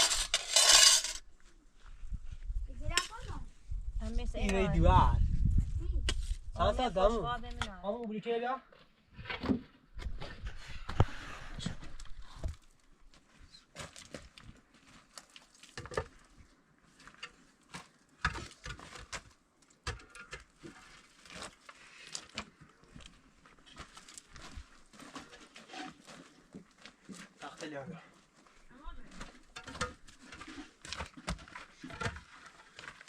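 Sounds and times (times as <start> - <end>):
clicks and scrapes: 0.0 - 1.2, 29.2 - 33.0.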